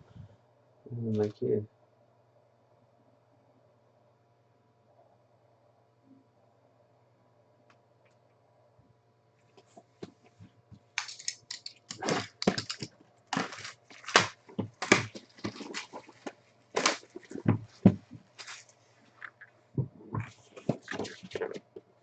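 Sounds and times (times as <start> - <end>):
packaging crackling and tearing: 11.0 - 17.5.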